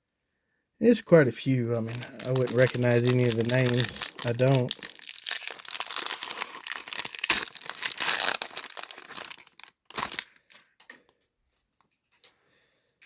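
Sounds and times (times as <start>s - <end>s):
wrapper tearing and crinkling: 1.7s - 10.7s.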